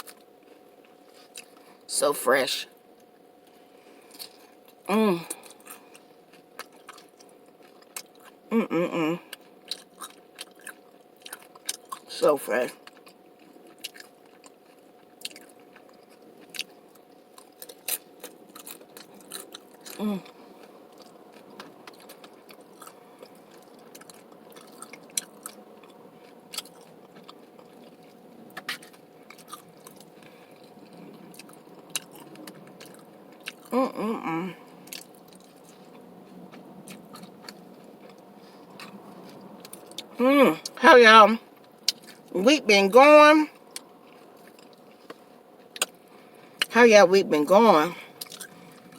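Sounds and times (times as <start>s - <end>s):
crunching tortilla chips: 0.0s - 1.9s, 3.0s - 8.5s, 9.2s - 40.8s, 41.4s - 42.4s, 43.5s - 46.7s, 48.0s - 48.9s
person humming: 4.9s - 5.4s, 8.5s - 9.3s, 20.0s - 20.3s, 33.7s - 34.6s, 40.2s - 40.7s.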